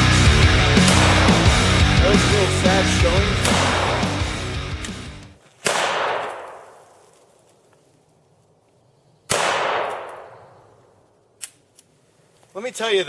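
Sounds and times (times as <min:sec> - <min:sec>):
rock music: 0:00.0 - 0:05.4
pistol shot: 0:00.8 - 0:01.8, 0:03.4 - 0:04.2, 0:05.6 - 0:06.8, 0:09.3 - 0:10.6.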